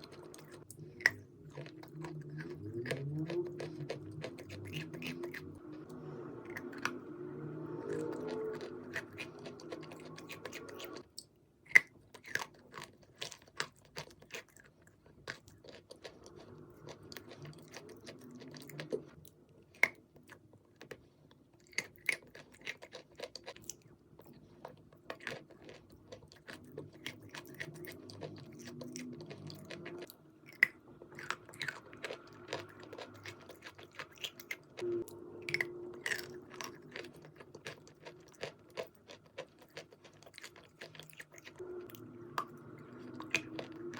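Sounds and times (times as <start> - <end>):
chalk being chewed: 0.0 - 11.0, 19.8 - 43.9.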